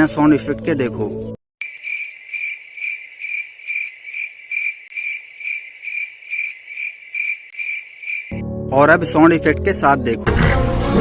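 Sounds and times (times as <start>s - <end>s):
cricket chirping: 1.6s - 8.4s.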